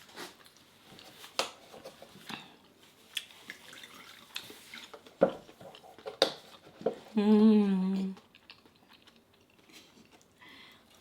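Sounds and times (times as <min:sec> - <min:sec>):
person chewing food: 0:02.3 - 0:06.7, 0:08.0 - 0:11.0.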